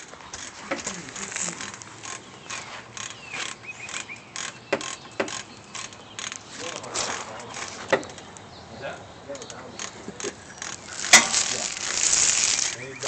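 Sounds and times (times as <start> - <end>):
sharp knocks: 3.4 - 6.3
metal tools clinking: 9.3 - 12.9.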